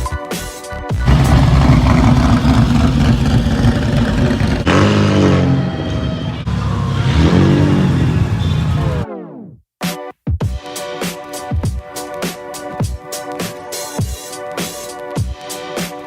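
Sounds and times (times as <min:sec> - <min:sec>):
car engine revving: 0:01.0 - 0:09.0.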